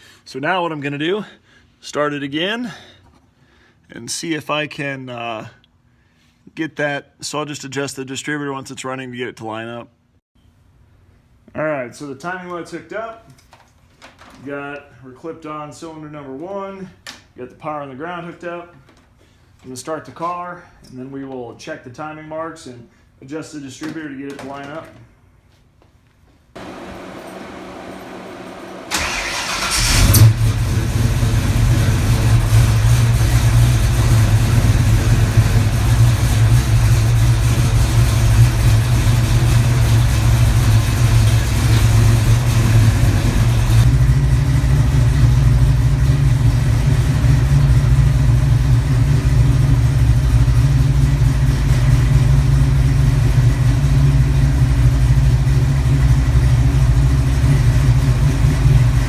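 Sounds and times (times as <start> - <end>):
engine running steadily: 26.6 - 59.0
starter motor cranking: 28.9 - 31.7.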